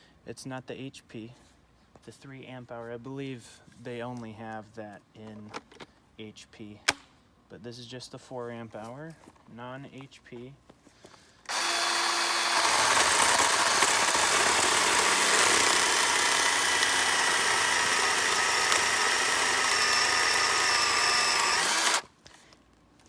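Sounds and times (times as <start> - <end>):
battery chainsaw cutting wood: 11.5 - 22.1.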